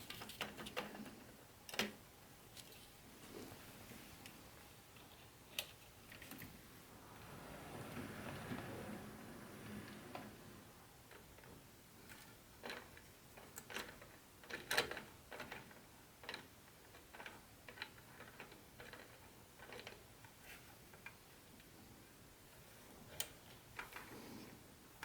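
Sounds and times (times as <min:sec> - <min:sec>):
model train parts clicking and tapping: 0:00.0 - 0:02.8, 0:11.0 - 0:21.7.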